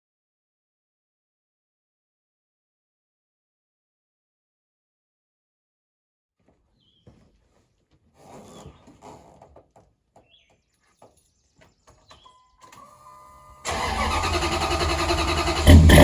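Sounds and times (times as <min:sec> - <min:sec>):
brief steady tone: 0:12.2 - 0:13.7
truck engine starting and running: 0:12.8 - 0:16.0.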